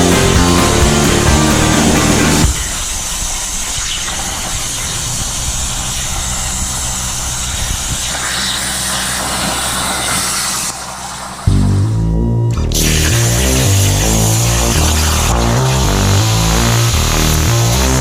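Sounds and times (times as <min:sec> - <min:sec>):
low hum: 0:00.0 - 0:18.0
plasma cutter hissing: 0:02.4 - 0:11.4, 0:12.7 - 0:17.8.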